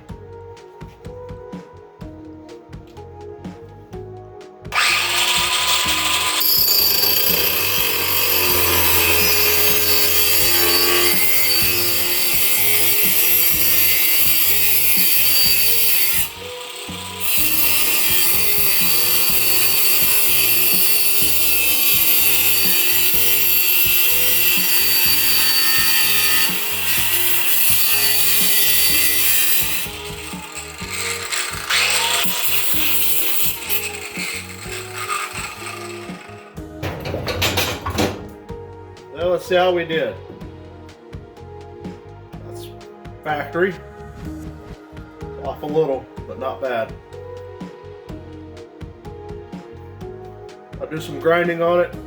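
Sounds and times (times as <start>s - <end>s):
faint background music: 0.0s - 52.0s
power tool cutting metal rod: 4.7s - 36.6s.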